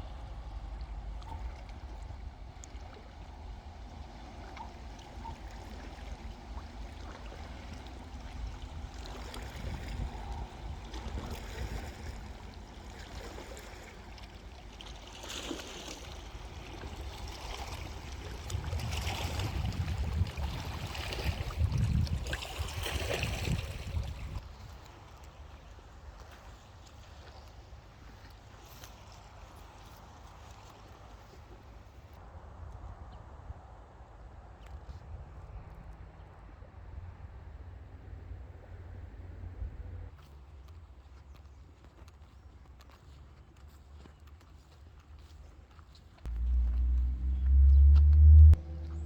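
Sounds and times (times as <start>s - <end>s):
wind rumble on microphone: 0.0s - 13.3s, 16.5s - 24.8s, 46.3s - 49.0s
water lapping on shore: 0.0s - 32.3s, 39.6s - 49.0s.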